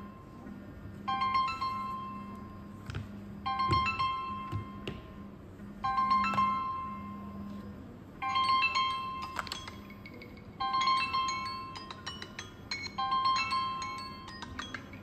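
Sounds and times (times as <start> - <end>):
bell-like ringtone chimes: 1.1 - 2.7, 3.4 - 4.9, 5.8 - 7.5, 8.2 - 15.0.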